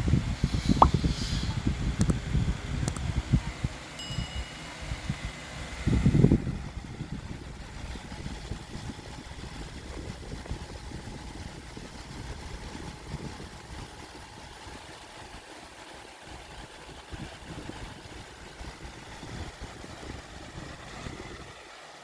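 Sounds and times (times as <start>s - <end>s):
wind buffeting microphone: 0.0s - 3.9s, 4.8s - 15.4s, 16.3s - 21.6s
fan motor whine: 0.0s - 22.0s.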